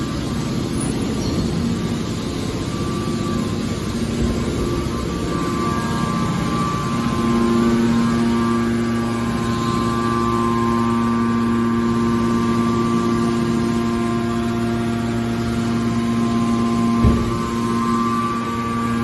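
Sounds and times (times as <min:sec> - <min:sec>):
hydraulic pump humming and whining: 0:00.0 - 0:19.0
short thump: 0:17.0 - 0:17.6.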